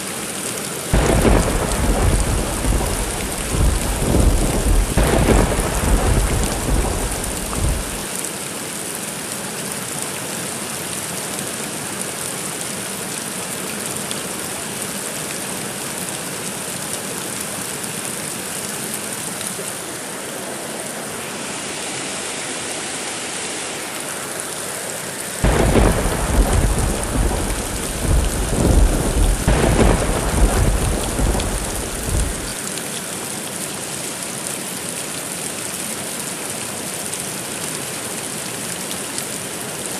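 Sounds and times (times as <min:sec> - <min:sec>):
steady rain falling: 0:00.0 - 0:39.9
thunder rumbling: 0:01.0 - 0:08.1, 0:25.4 - 0:32.6.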